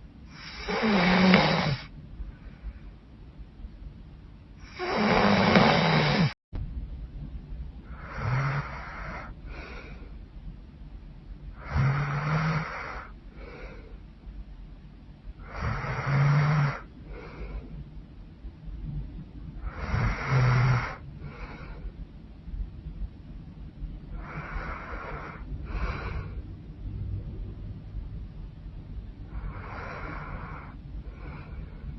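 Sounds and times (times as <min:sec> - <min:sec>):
woman snoring loudly: 0:00.3 - 0:01.9, 0:04.6 - 0:06.4, 0:07.9 - 0:09.7, 0:11.6 - 0:13.5, 0:15.4 - 0:16.9, 0:19.6 - 0:21.0, 0:24.2 - 0:26.2, 0:29.3 - 0:31.4.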